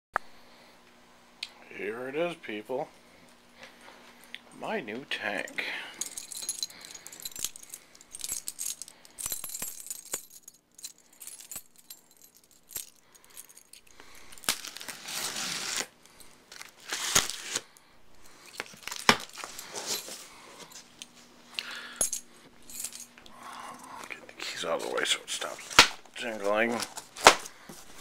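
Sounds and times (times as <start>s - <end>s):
keys jingling: 5.9s - 14.9s, 18.1s - 21.1s, 21.7s - 25.6s.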